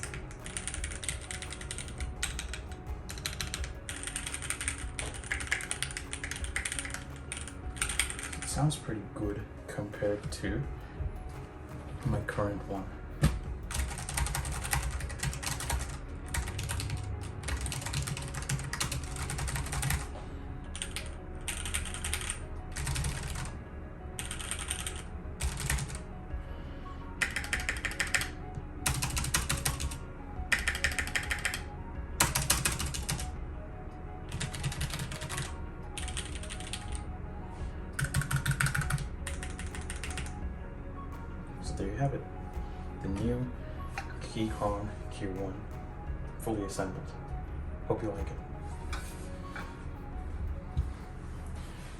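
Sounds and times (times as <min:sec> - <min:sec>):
mechanical keyboard typing: 0:00.0 - 0:08.5, 0:13.2 - 0:20.1, 0:20.7 - 0:23.6, 0:24.2 - 0:26.0, 0:27.2 - 0:33.3, 0:34.3 - 0:37.0, 0:38.0 - 0:40.3
background music: 0:00.0 - 0:51.9.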